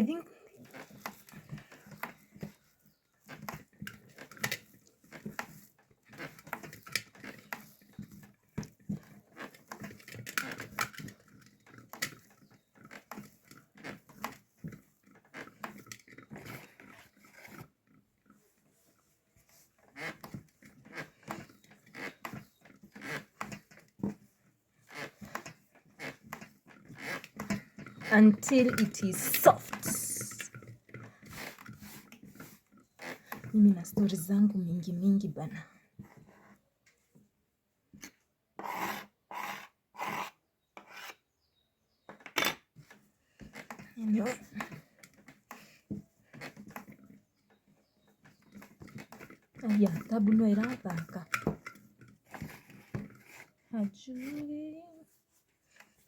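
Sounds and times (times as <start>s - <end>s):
dough slapping and squishing: 0.0s - 33.8s.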